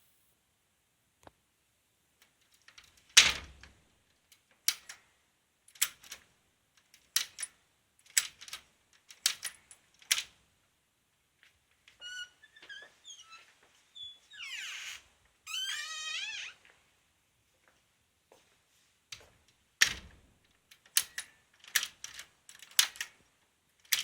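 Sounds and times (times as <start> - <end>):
short high squeaks: 12.0 - 16.6.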